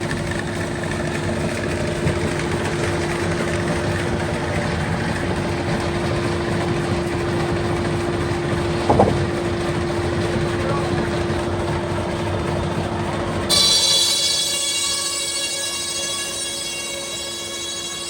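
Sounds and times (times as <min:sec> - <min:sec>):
sawmill machinery humming: 0:00.0 - 0:18.0
machinery squeak: 0:13.5 - 0:18.0.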